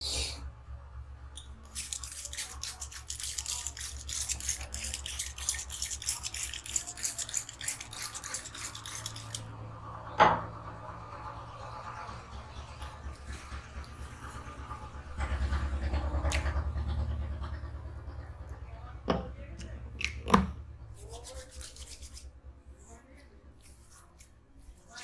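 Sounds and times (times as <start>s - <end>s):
hands rubbing hair and scalp: 1.7s - 9.4s, 21.0s - 25.0s.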